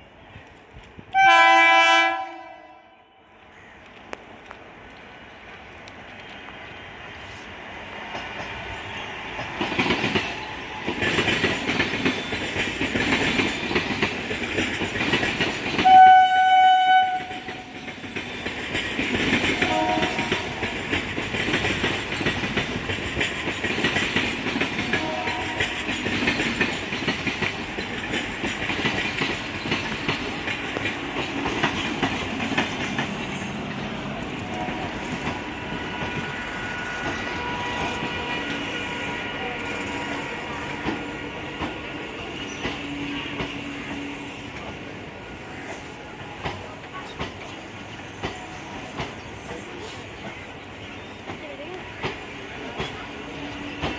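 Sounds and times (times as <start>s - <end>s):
train rumble and rail clatter: 0.0s - 53.9s
train horn blast: 1.1s - 3.3s, 15.8s - 17.7s, 19.4s - 20.6s, 24.9s - 26.0s, 34.4s - 44.6s.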